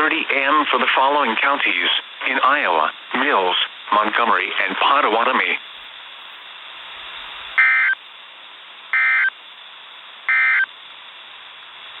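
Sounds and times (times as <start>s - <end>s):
radio hiss: 0.0s - 12.0s
buzzy digital data bursts: 7.6s - 8.0s, 8.9s - 9.3s, 10.3s - 10.7s.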